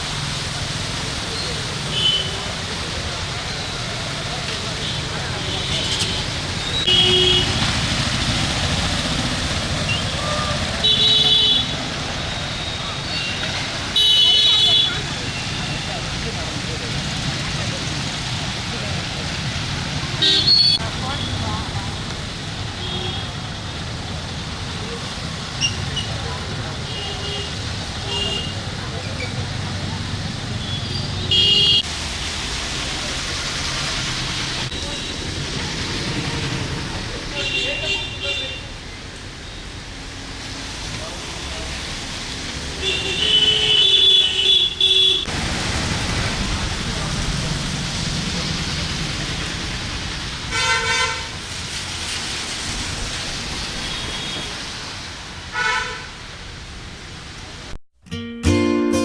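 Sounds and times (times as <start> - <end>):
passing vehicles rushing: 0.0 - 14.0, 14.8 - 26.9, 27.5 - 44.3, 45.2 - 57.8
rain hiss: 0.0 - 44.5, 45.3 - 57.8
traffic on wet road: 0.0 - 57.8
car horn beep: 30.6 - 31.8.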